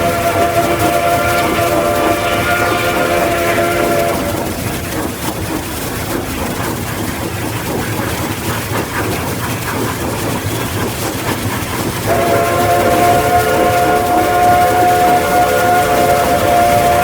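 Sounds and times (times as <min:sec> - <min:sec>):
train chord whistle: 0:00.0 - 0:05.8, 0:12.0 - 0:17.0
locomotive rumble: 0:00.0 - 0:17.0
wheels rattling over track: 0:00.0 - 0:17.0.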